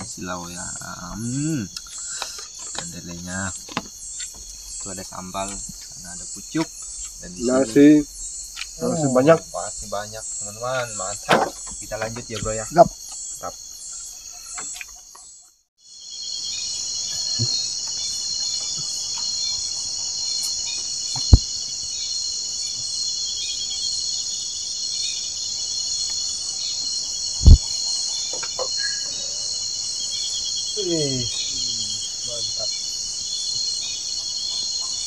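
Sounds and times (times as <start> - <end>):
crickets and insects shrilling: 0.0 - 35.0
sharp knocks: 11.3 - 12.5.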